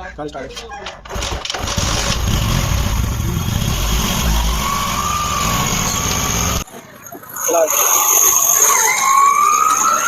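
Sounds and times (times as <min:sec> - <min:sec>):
tractor engine running: 0:01.1 - 0:06.6.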